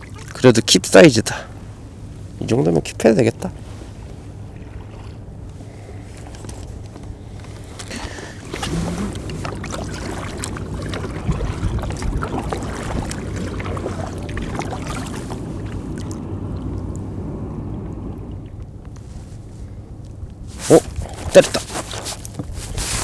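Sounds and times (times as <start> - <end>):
water around kayak: 0.0 - 23.0
knocks and rattles on kayak: 6.0 - 18.9, 20.6 - 23.0
wind on microphone: 8.0 - 23.0.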